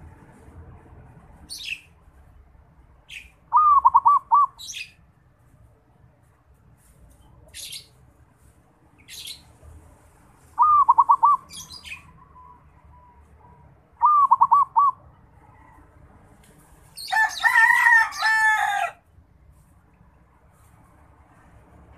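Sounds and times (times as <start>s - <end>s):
small birds chirping: 1.4s - 2.0s, 3.0s - 5.2s, 7.1s - 9.7s, 10.4s - 15.6s
dove cooing: 3.5s - 4.5s, 10.6s - 11.5s, 12.4s - 15.7s.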